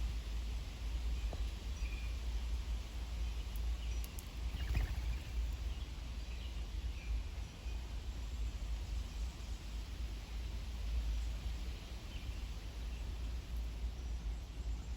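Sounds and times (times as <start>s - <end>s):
low outdoor rumble: 0.0s - 14.9s
faint bird chirps: 3.2s - 7.8s.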